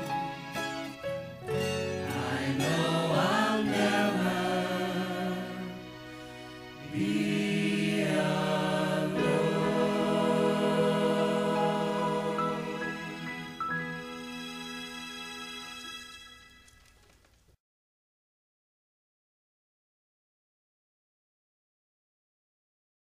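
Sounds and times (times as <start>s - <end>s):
gospel choir singing: 1.7s - 6.2s, 6.8s - 14.1s.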